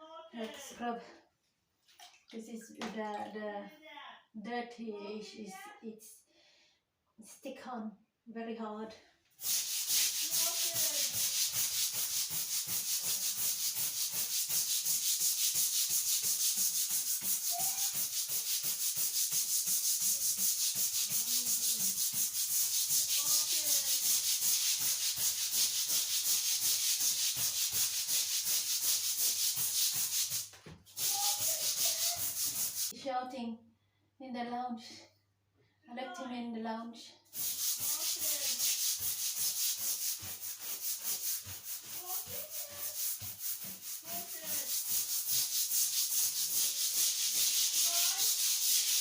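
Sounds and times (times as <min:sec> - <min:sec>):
scrubbing a carpet-like floor covering: 0:09.4 - 0:33.0, 0:37.3 - 0:49.0.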